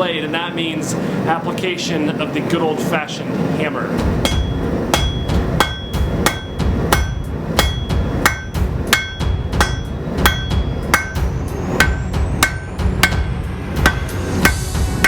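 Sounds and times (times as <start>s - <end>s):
hammer blows on anvil ringing: 4.0s - 15.0s.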